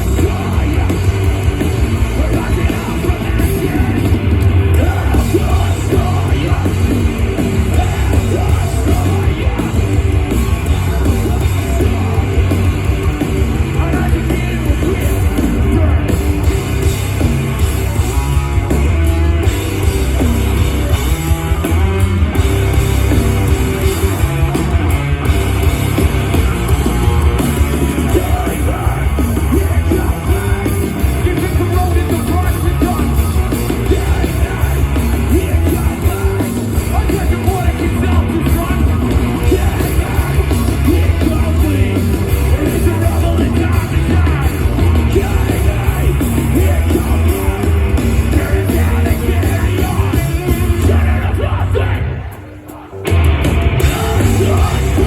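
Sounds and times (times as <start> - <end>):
distorted guitars: 0.0 - 55.0
drums: 0.0 - 55.0
heavy bass: 0.0 - 55.0
shouted vocals: 26.1 - 55.0.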